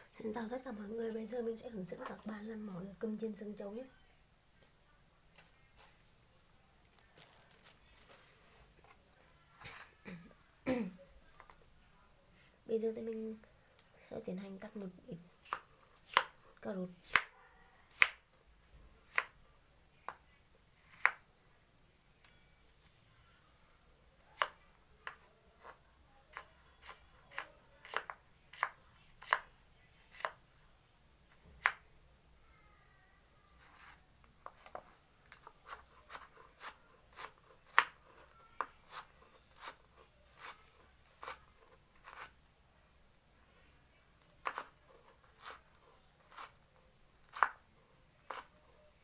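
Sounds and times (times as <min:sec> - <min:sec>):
knife chopping carrot on board: 0:15.4 - 0:16.4, 0:17.9 - 0:18.2, 0:20.9 - 0:21.2, 0:24.4 - 0:29.5, 0:47.2 - 0:47.6.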